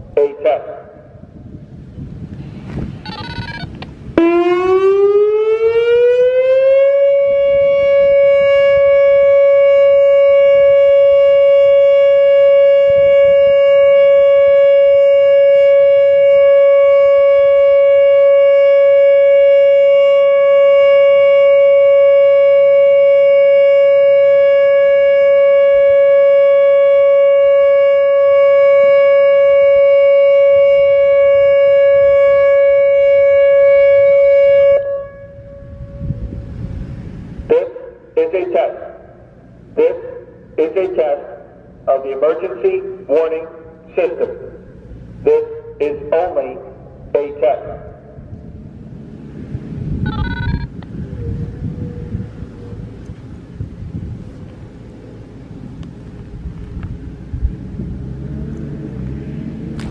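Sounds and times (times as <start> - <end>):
electronic warning siren tone: 3.0 - 37.1, 50.0 - 53.1.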